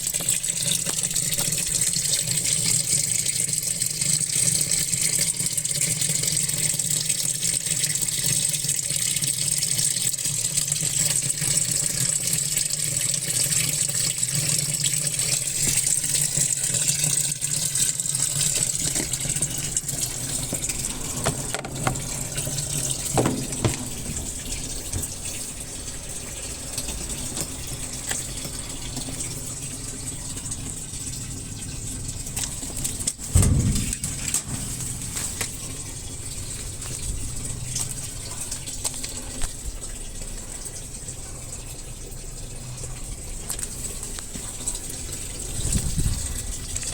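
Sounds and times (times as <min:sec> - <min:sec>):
water rushing into washing machine: 0:00.0 - 0:46.9
washing machine clicks: 0:18.4 - 0:29.5, 0:33.0 - 0:34.9.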